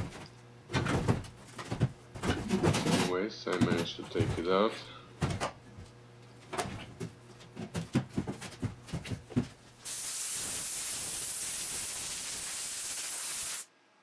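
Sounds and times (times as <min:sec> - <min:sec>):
pressurized gas hissing: 0:09.8 - 0:13.7.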